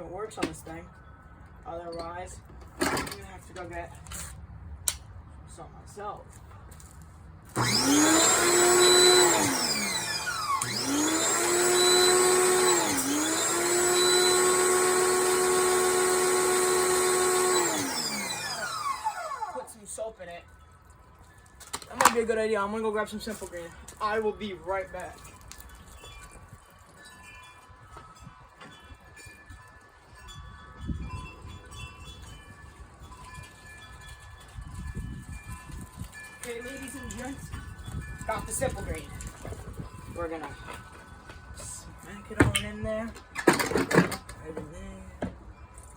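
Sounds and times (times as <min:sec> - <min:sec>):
pressure washer motor whining: 0:07.5 - 0:19.8
wind chimes tinkling: 0:18.0 - 0:43.4, 0:44.3 - 0:45.9.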